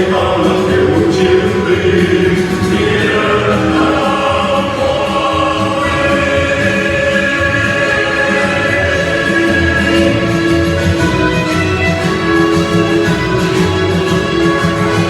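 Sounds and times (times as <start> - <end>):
choir singing a march: 0.0 - 15.0
musical accompaniment: 0.0 - 15.0.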